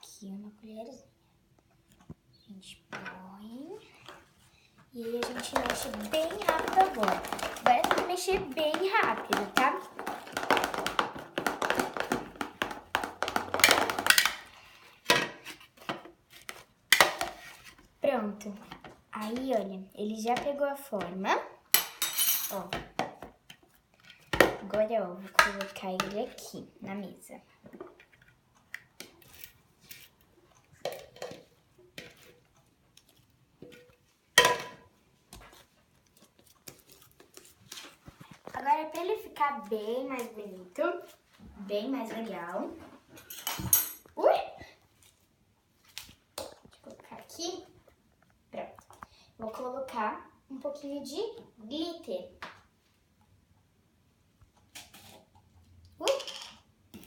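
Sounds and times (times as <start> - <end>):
utensil stirring slime in a pot: 3.2 - 21.6, 22.5 - 43.1, 54.4 - 56.1.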